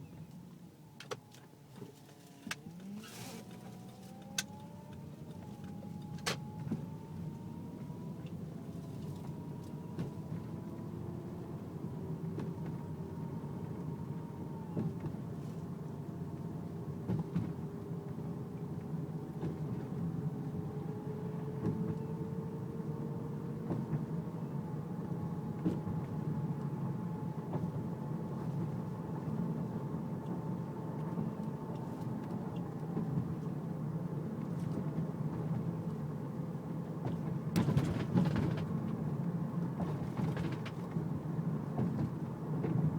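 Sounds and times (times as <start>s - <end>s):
engine and road rumble: 0.0s - 42.9s
power steering whining: 2.2s - 10.0s.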